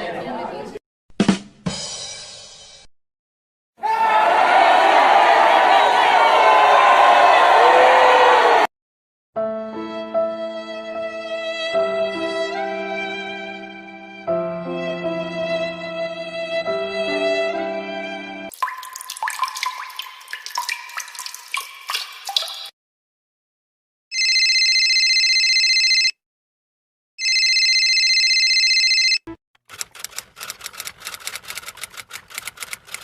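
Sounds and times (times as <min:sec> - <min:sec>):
watery bubbling and dripping: 0:18.5 - 0:22.7
electronic ringing: 0:24.1 - 0:26.2, 0:27.2 - 0:29.3
fast sharp clicks: 0:29.6 - 0:33.0.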